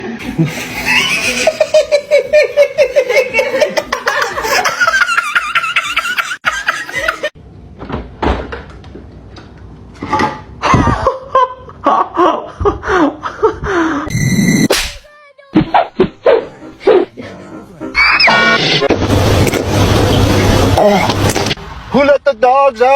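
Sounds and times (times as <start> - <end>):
people laughing: 0.2 - 7.4.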